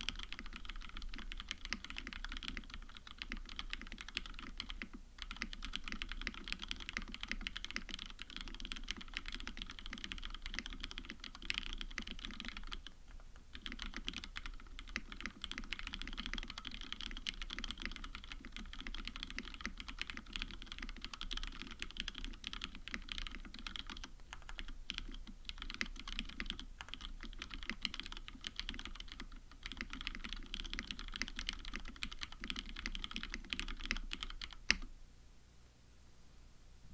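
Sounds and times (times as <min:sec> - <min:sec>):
mechanical keyboard typing: 0:00.0 - 0:34.9.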